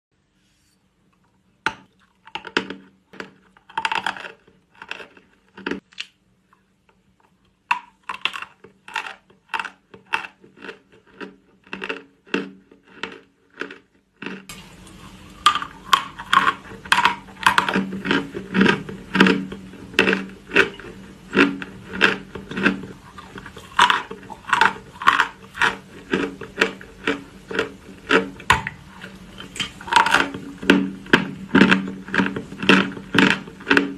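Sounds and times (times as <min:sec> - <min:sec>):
crisp crunches and clicks: 0:01.9 - 0:06.2, 0:15.4 - 0:33.9.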